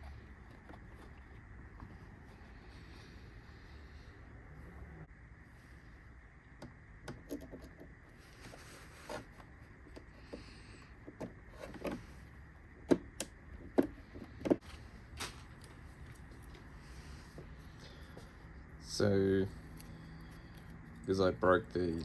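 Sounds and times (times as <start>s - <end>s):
plastic parts clicking and knocking: 6.6s - 8.0s, 12.8s - 14.6s.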